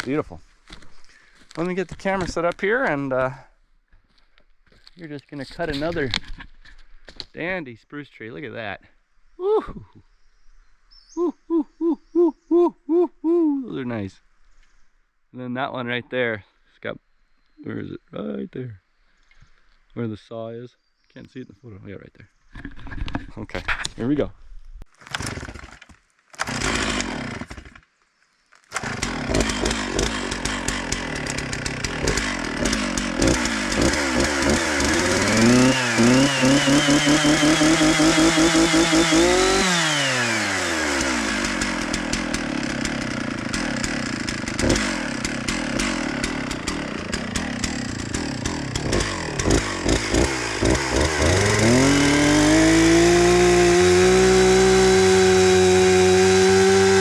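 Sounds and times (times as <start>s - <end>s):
chainsaw revving: 25.1s - 25.8s, 26.4s - 27.8s, 28.7s - 57.0s.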